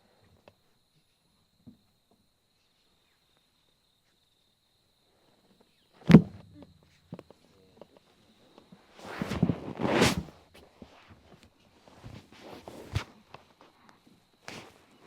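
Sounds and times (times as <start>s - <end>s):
sharp thump on treatment table: 6.1s - 6.8s
body shifting on table rustling: 9.0s - 10.7s.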